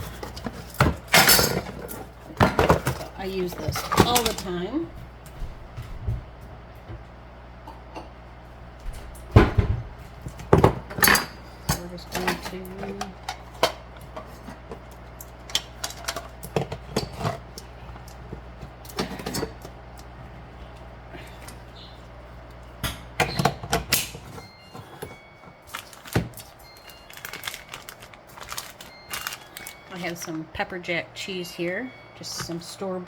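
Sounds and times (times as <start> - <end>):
utensils clattering on a counter: 0.0 - 4.8, 9.4 - 19.8, 22.8 - 30.4
steady low hum: 0.0 - 33.0.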